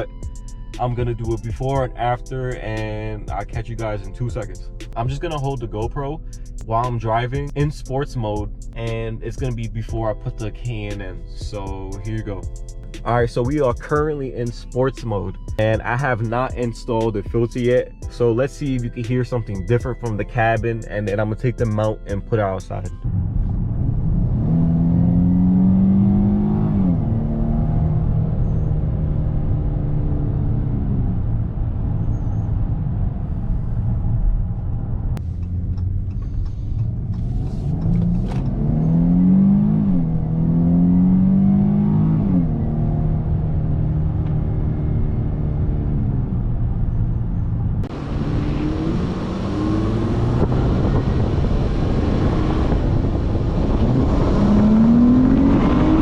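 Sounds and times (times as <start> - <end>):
car engine accelerating: 0.0 - 56.0
wind and road noise: 22.9 - 56.0.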